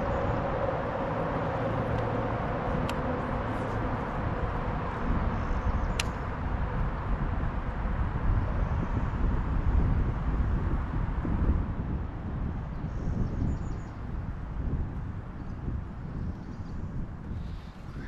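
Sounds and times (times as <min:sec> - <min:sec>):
wind buffeting microphone: 0:00.0 - 0:18.0
sharp click: 0:05.9 - 0:06.2.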